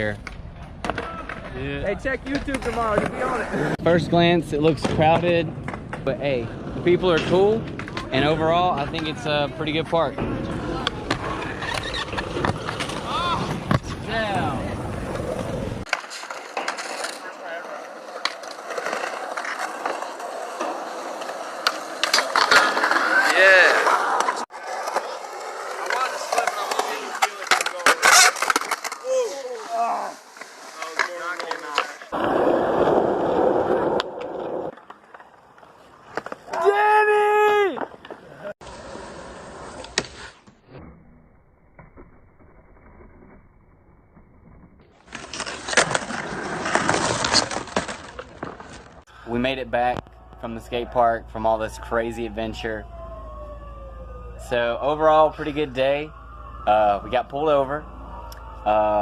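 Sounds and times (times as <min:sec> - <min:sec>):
skateboard wheels rolling on concrete: 0:00.0 - 0:59.0
skateboard clacking: 0:15.9 - 0:29.3.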